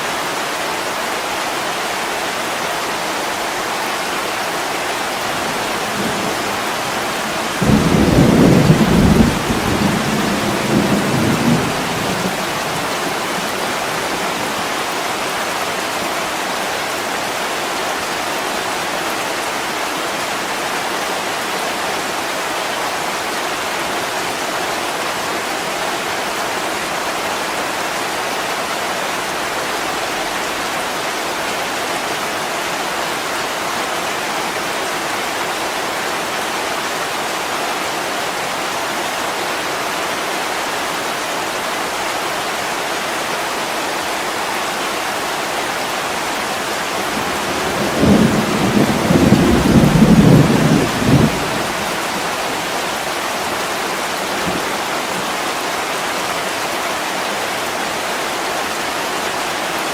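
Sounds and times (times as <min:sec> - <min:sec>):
heavy rain on window glass: 0:04.7 - 0:18.2, 0:45.9 - 0:55.8
thunder rumble: 0:47.2 - 0:52.0.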